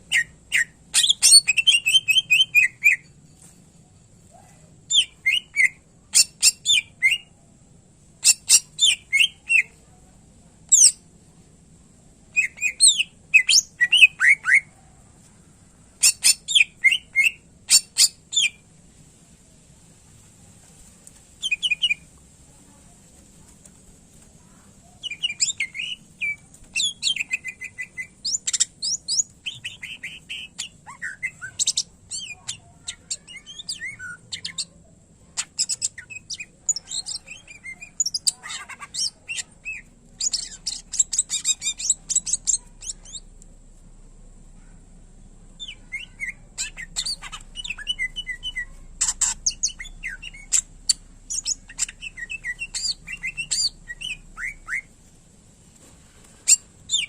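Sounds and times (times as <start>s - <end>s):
bird singing: 45.6s - 54.9s.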